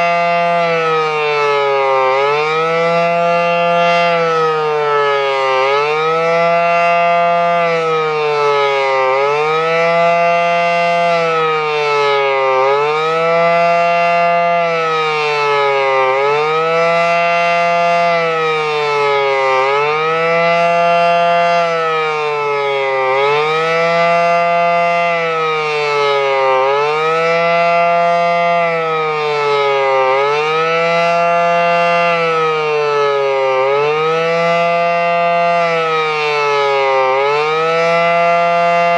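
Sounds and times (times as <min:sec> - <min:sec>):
warning siren wailing: 0:00.0 - 0:38.9.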